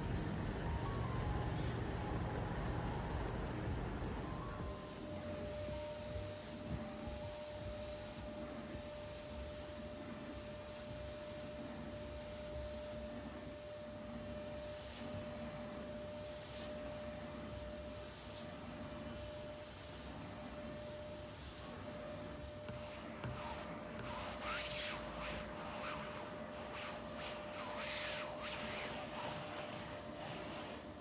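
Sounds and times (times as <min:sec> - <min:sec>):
faint steady hum: 0:00.0 - 0:31.0
thin high tone: 0:04.2 - 0:08.0.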